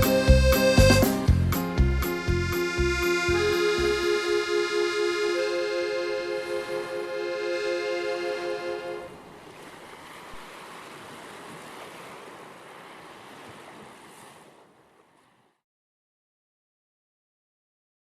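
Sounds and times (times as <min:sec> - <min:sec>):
accordion music: 0:00.0 - 0:09.2.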